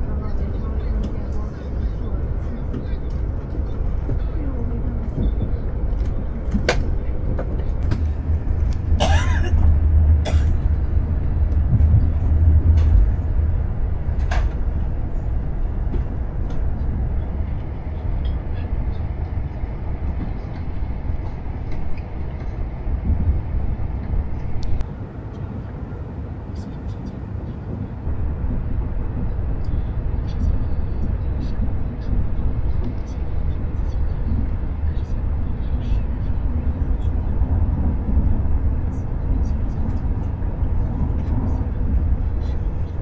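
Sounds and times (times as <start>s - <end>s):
train rumble inside carriage: 0.0s - 43.0s.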